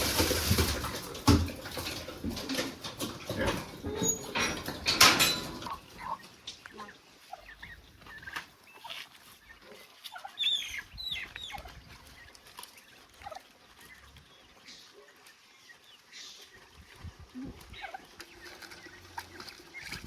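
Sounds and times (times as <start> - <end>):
small knocks: 0.0 - 5.8
chicks cheeping: 5.6 - 20.0.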